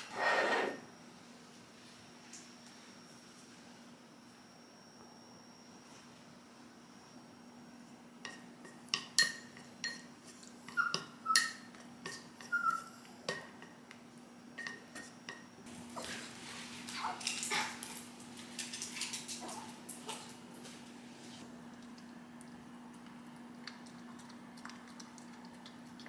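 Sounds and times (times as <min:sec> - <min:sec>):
dishes and utensils clinking: 0:08.3 - 0:13.8, 0:14.6 - 0:20.3.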